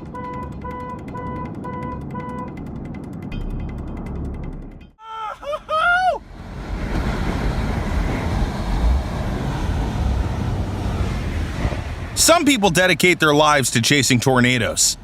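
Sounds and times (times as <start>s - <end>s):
rushing noise with low rumble: 0.0s - 5.0s, 6.2s - 15.0s
person shouting: 5.0s - 6.2s.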